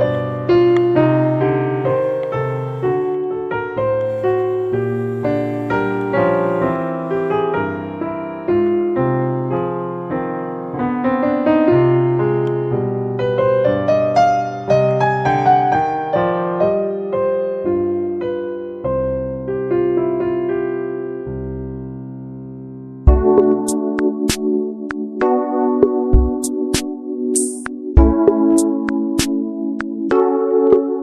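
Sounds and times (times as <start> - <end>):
piano music: 0.0 - 31.0.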